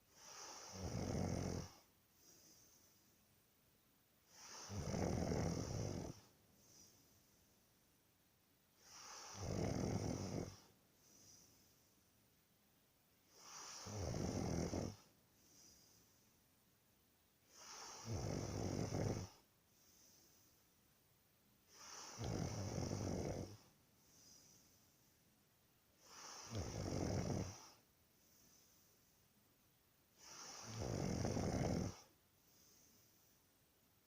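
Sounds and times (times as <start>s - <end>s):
person snoring: 0.2s - 1.8s, 4.3s - 6.9s, 8.8s - 11.5s, 13.3s - 16.0s, 17.5s - 20.3s, 21.7s - 24.7s, 26.0s - 27.8s, 30.2s - 33.1s.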